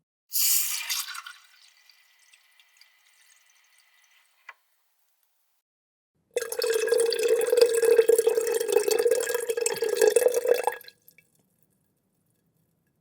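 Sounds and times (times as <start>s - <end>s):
water pouring into glass: 0.4s - 3.8s, 6.4s - 10.9s
water drip: 6.4s - 11.4s.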